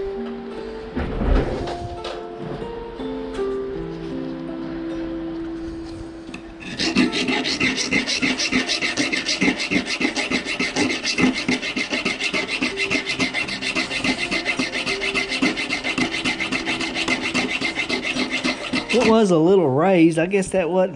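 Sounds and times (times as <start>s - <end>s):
background music: 0.0s - 20.9s
filing scraping strokes on metal: 6.6s - 19.2s.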